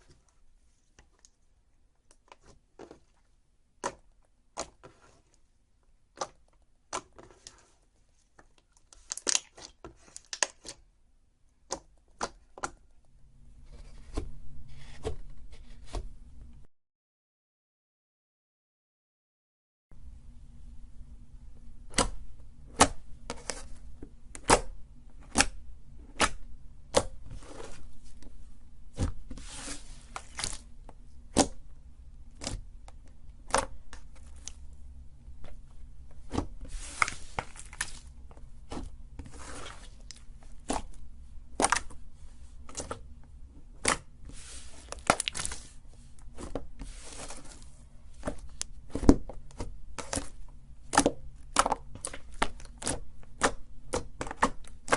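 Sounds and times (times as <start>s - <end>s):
slime crackling and rustling: 6.1s - 10.8s, 27.0s - 31.6s, 32.3s - 54.9s
low steady hum: 20.0s - 54.9s.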